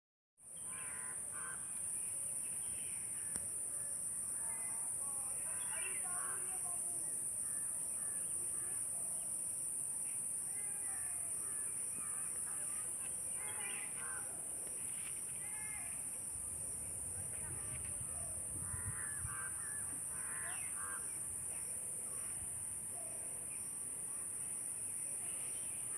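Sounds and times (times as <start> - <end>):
steady high-pitched hiss: 0.4 - 25.9
crow-like caws: 0.7 - 1.7, 18.6 - 21.2.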